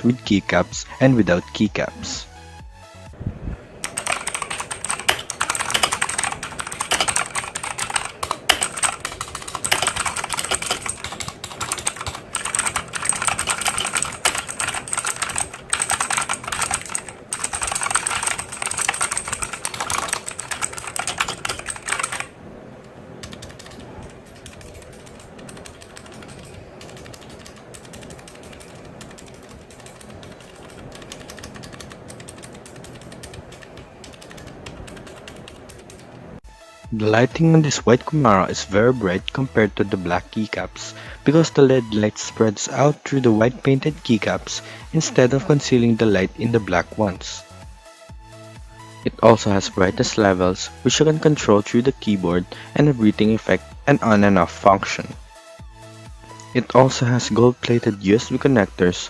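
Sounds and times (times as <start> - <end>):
mechanical keyboard typing: 3.8 - 36.4.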